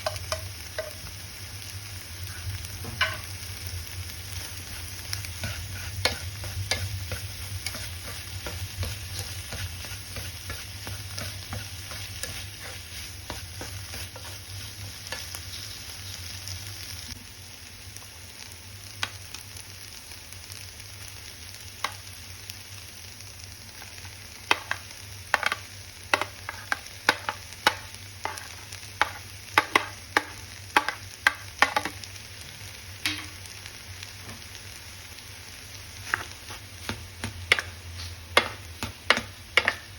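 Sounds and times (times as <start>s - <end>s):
rice sizzling in a pan: 0.0s - 39.9s
utensil stirring and scraping: 4.4s - 15.3s
utensil knocking against pan: 38.4s - 39.9s.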